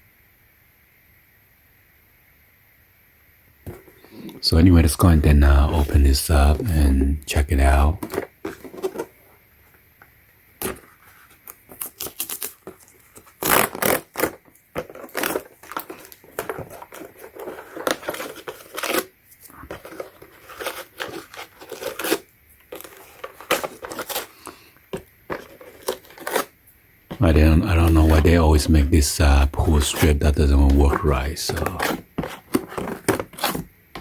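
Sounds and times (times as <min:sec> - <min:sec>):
packaging tearing and crinkling: 0:10.6 - 0:24.6, 0:25.3 - 0:26.5, 0:27.8 - 0:33.7.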